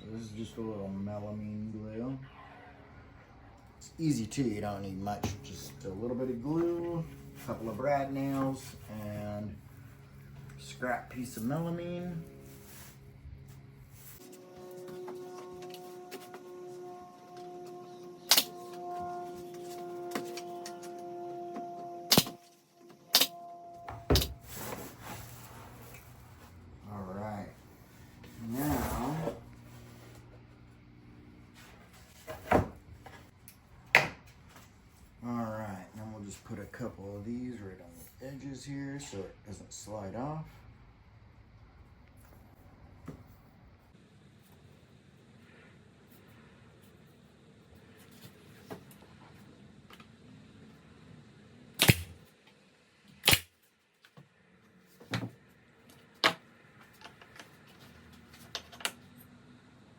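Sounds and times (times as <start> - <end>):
brad nailer firing: 51.8 - 52.2, 53.2 - 53.5.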